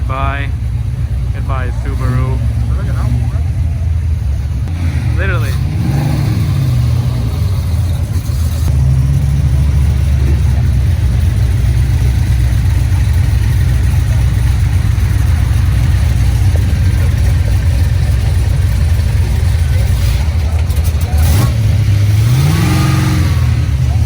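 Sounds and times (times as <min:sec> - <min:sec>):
car engine running: 0:00.0 - 0:24.0.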